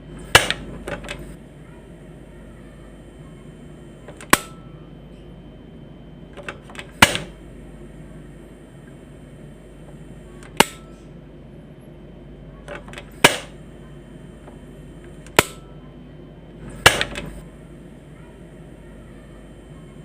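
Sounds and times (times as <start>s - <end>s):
gas stove knob snapping: 0.3s - 1.1s, 4.1s - 4.6s, 6.4s - 7.3s, 10.4s - 10.9s, 12.7s - 13.5s, 15.3s - 15.6s, 16.8s - 17.4s.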